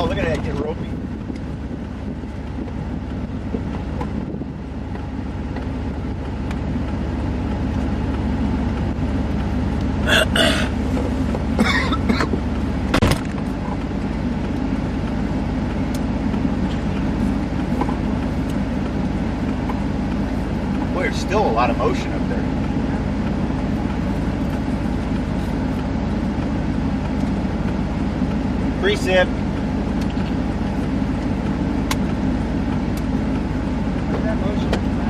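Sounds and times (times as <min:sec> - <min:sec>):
vehicle engine idling: 0:00.0 - 0:35.0.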